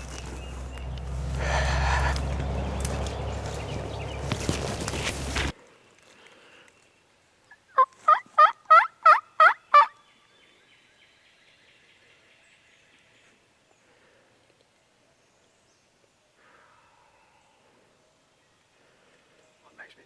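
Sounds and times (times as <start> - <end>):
turkey yelps: 0.0 - 5.4, 7.8 - 9.9.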